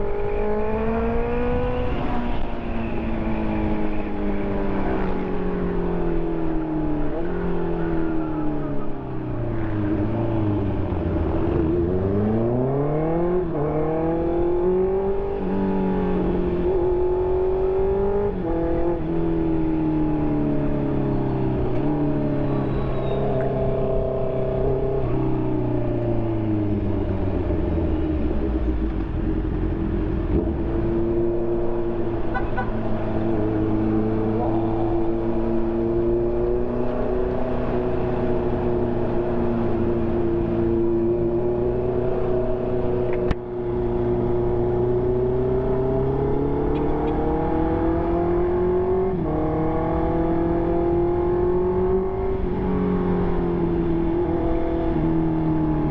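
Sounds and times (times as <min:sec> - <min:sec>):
motorcycle engine revving: 0:26.4 - 0:55.9.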